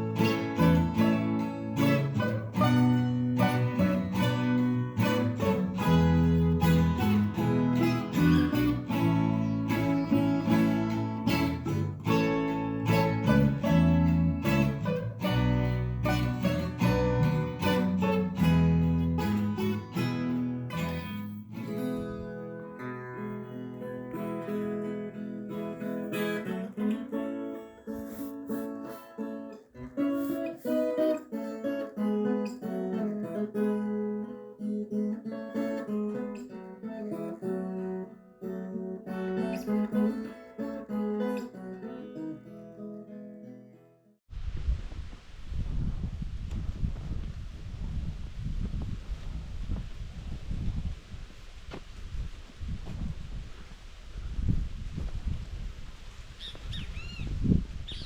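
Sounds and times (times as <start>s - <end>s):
bass line: 0.0s - 22.3s
acoustic guitar strummed and plucked: 0.0s - 44.2s.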